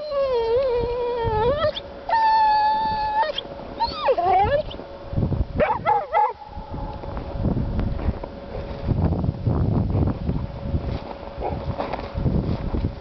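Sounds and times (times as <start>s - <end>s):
dog whining: 0.0s - 4.8s
dog yelping whimpers: 0.0s - 4.8s, 5.6s - 6.5s.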